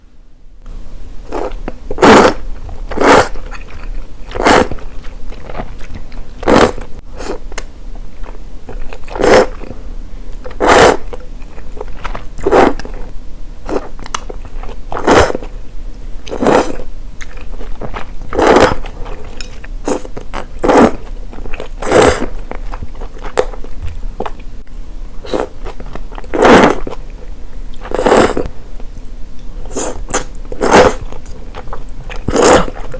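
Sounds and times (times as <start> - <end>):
person slurping noodles: 1.3 - 3.7, 4.3 - 4.9, 6.4 - 7.4, 9.0 - 9.7, 10.6 - 11.2, 12.4 - 13.0, 14.9 - 15.5, 16.3 - 16.8, 18.3 - 19.3, 19.9 - 22.4, 25.3 - 25.6, 26.3 - 27.0, 27.8 - 28.5, 29.7 - 31.1, 32.2 - 32.9
person chewing: 1.3 - 13.1, 13.7 - 15.5, 16.2 - 24.5, 25.2 - 32.9.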